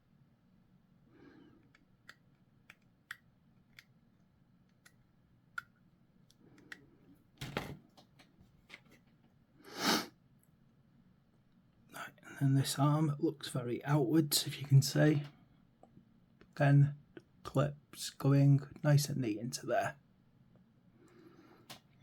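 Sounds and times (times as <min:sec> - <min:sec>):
plastic parts clicking and tapping: 0:01.6 - 0:04.0, 0:04.6 - 0:09.2.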